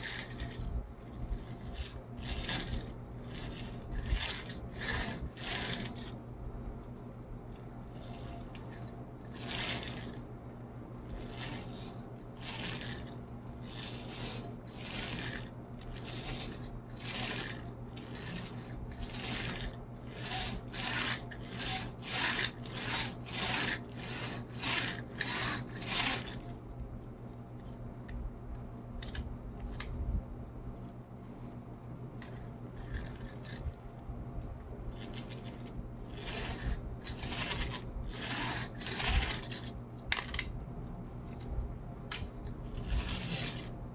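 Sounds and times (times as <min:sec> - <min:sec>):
toy truck wheels scraping: 0:00.0 - 0:06.2, 0:07.7 - 0:10.3, 0:11.0 - 0:26.6, 0:29.0 - 0:29.9, 0:32.2 - 0:33.8, 0:34.9 - 0:40.5, 0:42.1 - 0:43.9.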